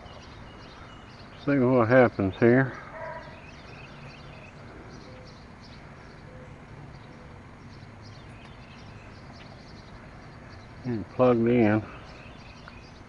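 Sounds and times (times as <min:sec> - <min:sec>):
faint bird chirps: 0:00.0 - 0:13.0
steady background noise: 0:00.0 - 0:13.0.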